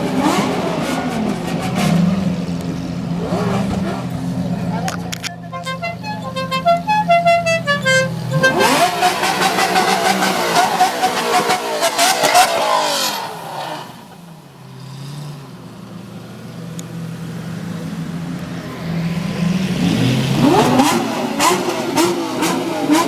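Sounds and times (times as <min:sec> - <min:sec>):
car engines revving: 0:00.0 - 0:23.0
exhaust crackles: 0:03.0 - 0:06.0
car horn notes: 0:04.1 - 0:09.8.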